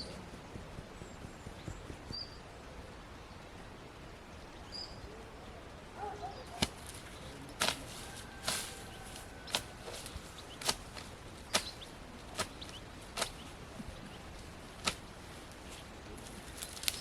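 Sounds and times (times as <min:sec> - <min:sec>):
faint bird chirps: 0:00.0 - 0:10.6.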